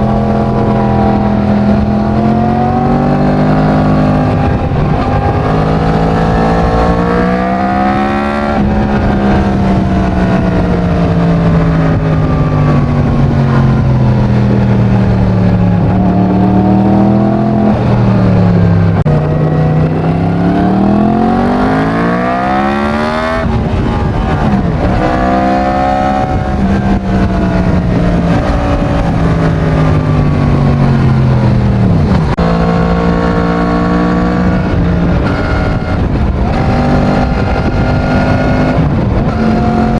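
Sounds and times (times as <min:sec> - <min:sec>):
motorcycle engine revving: 0:00.0 - 0:39.9
wind noise: 0:00.0 - 0:39.9.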